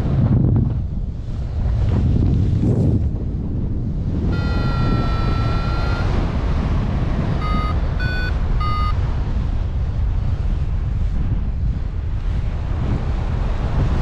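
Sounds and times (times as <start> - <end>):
wind buffeting microphone: 0.0 - 14.0
variometer beeping: 4.3 - 6.4, 7.3 - 9.0.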